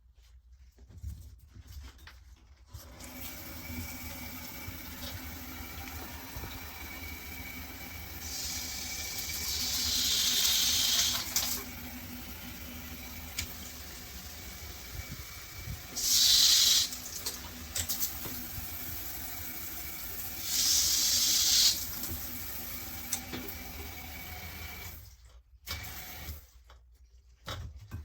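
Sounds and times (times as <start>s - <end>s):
shower spraying into bathtub: 7.7s - 11.8s, 13.1s - 23.7s.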